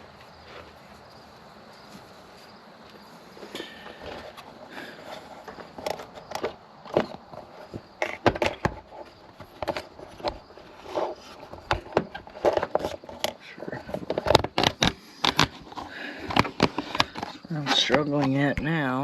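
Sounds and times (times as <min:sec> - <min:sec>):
plastic parts clicking and tapping: 0:03.5 - 0:18.7.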